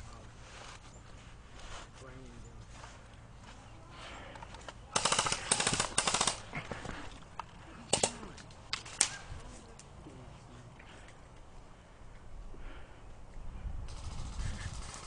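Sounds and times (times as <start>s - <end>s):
airsoft gun rapid clicking shots: 5.0s - 6.4s, 7.9s - 8.1s, 13.9s - 15.0s.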